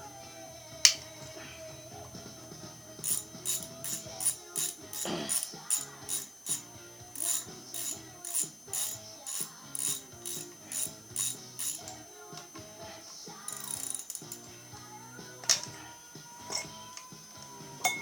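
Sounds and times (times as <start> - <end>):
ratchet wrench clicking: 3.0 - 12.4, 13.4 - 14.6.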